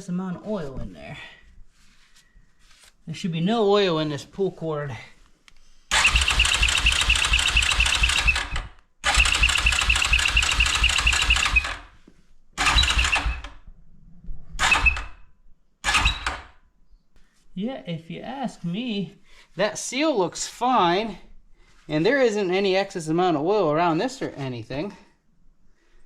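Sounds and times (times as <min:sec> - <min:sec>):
electric starter cranking engine: 0:05.9 - 0:11.9, 0:12.6 - 0:13.6, 0:14.6 - 0:15.1, 0:15.8 - 0:16.5.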